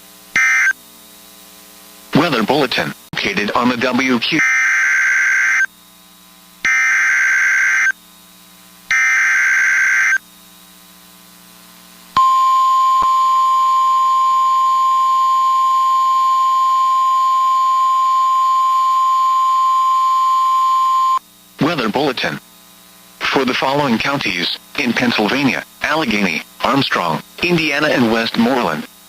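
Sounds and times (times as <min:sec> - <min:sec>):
warbling digital data tones: 0:04.3 - 0:05.7, 0:06.7 - 0:08.0, 0:08.9 - 0:10.2.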